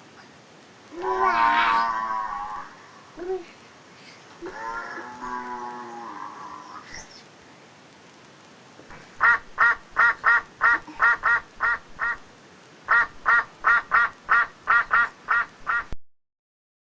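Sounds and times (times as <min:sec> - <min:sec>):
duck quacking: 0:09.2 - 0:12.2, 0:12.9 - 0:16.0.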